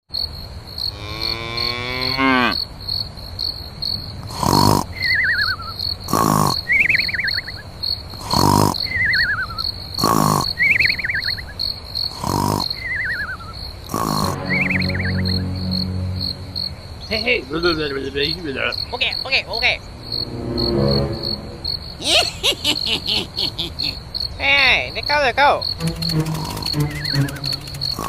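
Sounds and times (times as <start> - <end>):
cricket chirping: 0.1 - 28.0
falling warbling whistle: 14.3 - 16.8.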